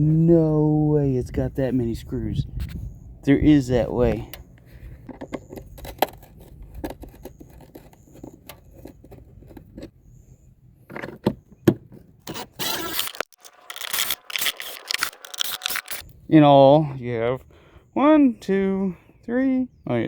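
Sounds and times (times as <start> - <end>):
hands clicking and scraping plastic: 5.0 - 9.9.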